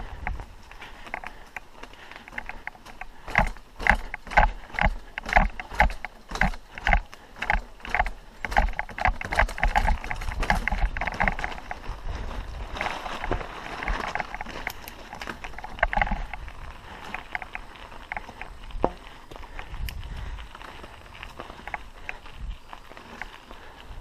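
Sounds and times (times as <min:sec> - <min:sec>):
rhythmic rattling knocks: 0:02.3 - 0:11.9, 0:13.2 - 0:19.0.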